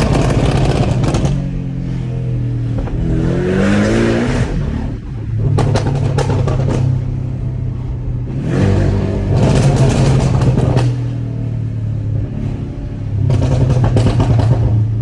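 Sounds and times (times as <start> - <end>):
exhaust pops and crackles: 0.0 - 1.7, 5.3 - 7.2, 9.3 - 11.1, 13.2 - 15.0
car engine accelerating: 0.0 - 15.0.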